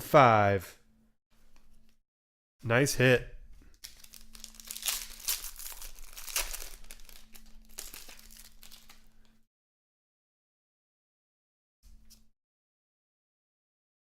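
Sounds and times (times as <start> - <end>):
card pack wrapper crinkling: 3.6 - 9.4.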